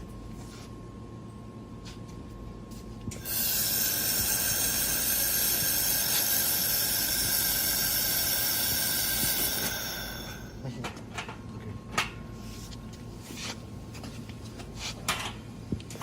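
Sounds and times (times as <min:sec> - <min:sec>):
laser welder hissing with high tones: 0:03.2 - 0:10.6.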